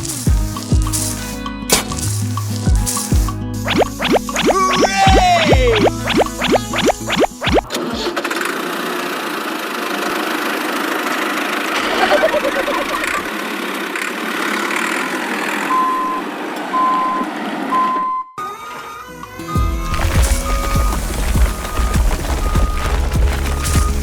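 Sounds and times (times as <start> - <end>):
short beeps: 15.7 - 18.4
vehicle engine running: 19.9 - 24.0.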